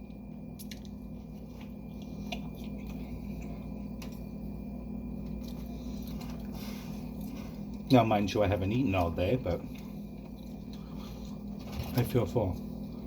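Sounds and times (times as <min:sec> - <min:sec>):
steady low hum: 0:00.0 - 0:13.0
person eating: 0:00.5 - 0:04.4, 0:05.2 - 0:07.9.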